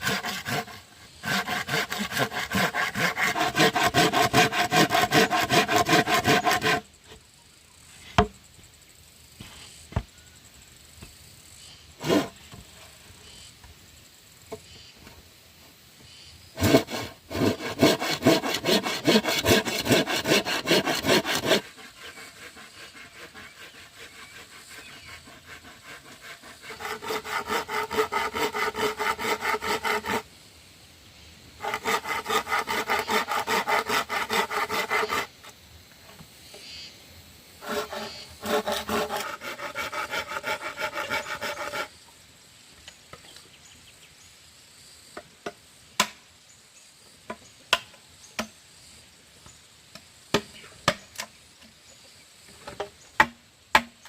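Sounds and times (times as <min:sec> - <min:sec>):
hand saw cutting wood: 0:00.0 - 0:06.9, 0:12.0 - 0:12.5, 0:16.6 - 0:30.3, 0:31.6 - 0:35.6, 0:37.6 - 0:41.9.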